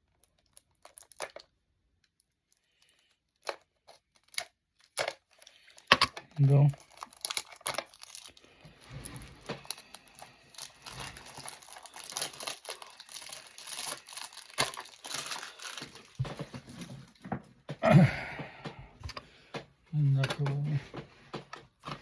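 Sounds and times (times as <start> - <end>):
plastic packaging crinkling and tearing: 0.0 - 17.2
small clicks and rustles: 0.0 - 17.6.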